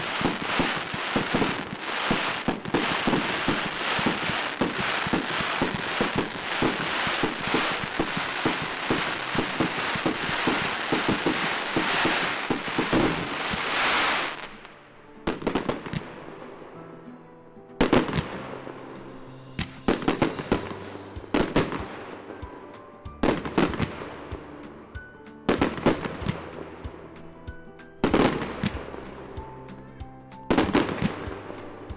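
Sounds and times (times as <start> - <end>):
sharp firecracker bangs: 0.0 - 14.5, 19.6 - 24.7
loud hiss: 0.0 - 14.7
firecrackers crackling: 0.0 - 16.7, 19.6 - 27.3, 28.0 - 31.9
faint background music: 0.0 - 31.9.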